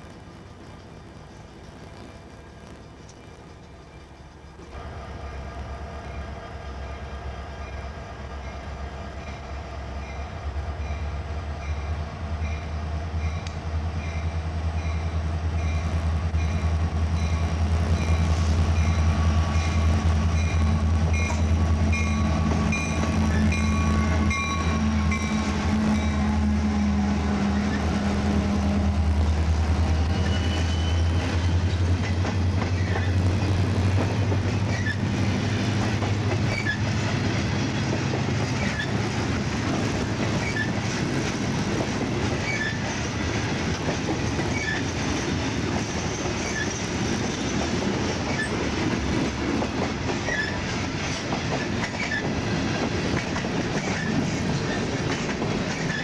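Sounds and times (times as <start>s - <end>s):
diesel locomotive engine rumble: 0.0s - 56.0s
freight cars rolling: 14.4s - 56.0s
wheels clicking over rail joints: 30.1s - 56.0s.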